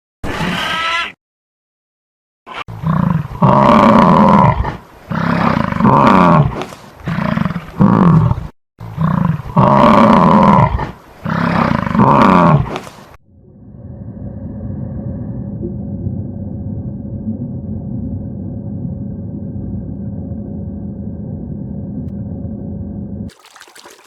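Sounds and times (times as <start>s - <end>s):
animal calling loudly: 0.3s - 1.2s.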